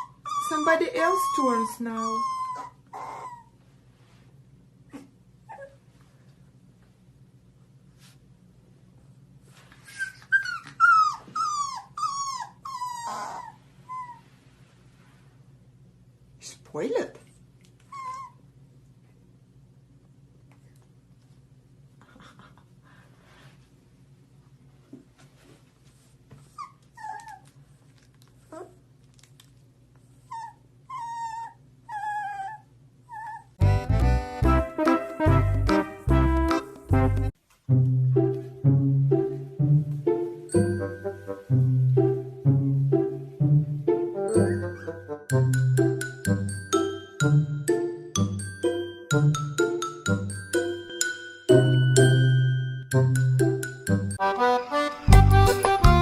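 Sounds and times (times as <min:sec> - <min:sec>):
dog whining: 0:00.0 - 0:03.6, 0:04.9 - 0:05.9, 0:09.8 - 0:14.4, 0:17.8 - 0:18.5, 0:26.5 - 0:27.6, 0:28.4 - 0:28.8, 0:30.1 - 0:33.7
puppy whimpering: 0:00.0 - 0:03.6, 0:04.9 - 0:05.9, 0:09.8 - 0:14.3, 0:17.8 - 0:18.5, 0:26.5 - 0:27.6, 0:28.4 - 0:28.8, 0:30.2 - 0:33.6
loud brass band music: 0:33.6 - 0:37.3.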